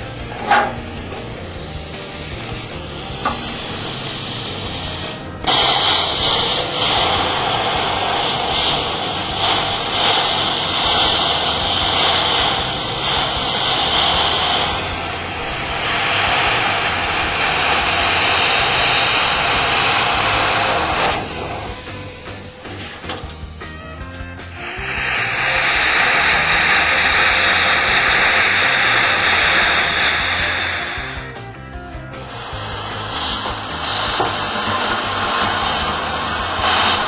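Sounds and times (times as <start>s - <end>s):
plasma cutter hissing: 0.0s - 37.0s.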